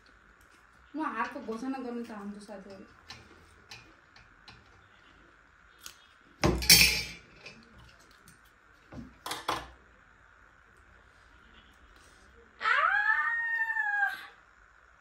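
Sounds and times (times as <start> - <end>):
dishes and cutlery clattering: 6.5 - 7.6.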